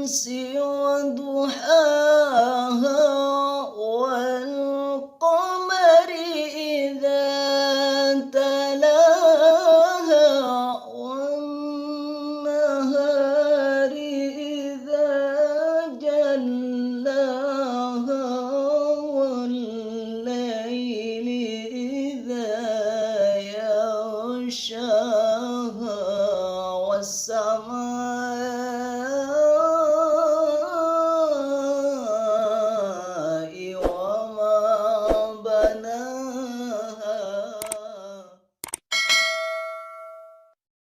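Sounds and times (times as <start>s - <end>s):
solo voice chanting recitation: 0.0s - 38.5s.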